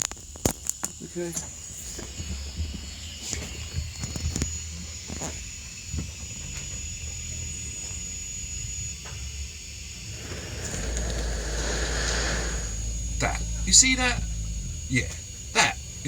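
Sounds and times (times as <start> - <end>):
low steady rumble with whine: 6.7 - 16.0.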